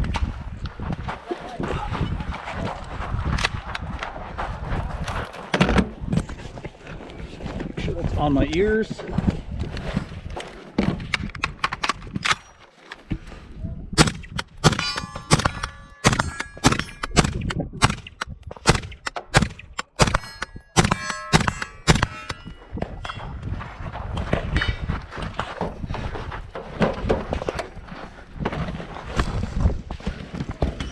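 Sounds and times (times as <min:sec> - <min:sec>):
metallic ring: 0:14.0 - 0:18.2, 0:18.9 - 0:23.4
rifle shots: 0:14.0 - 0:22.6.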